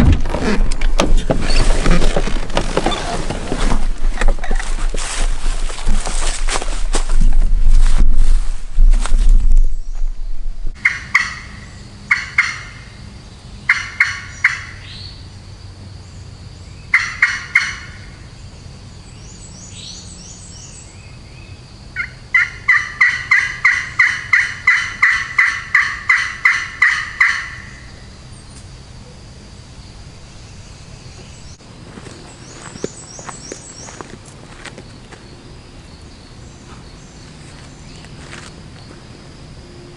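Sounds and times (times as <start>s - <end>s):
turkey call yelps: 10.8s - 12.8s, 22.0s - 27.9s.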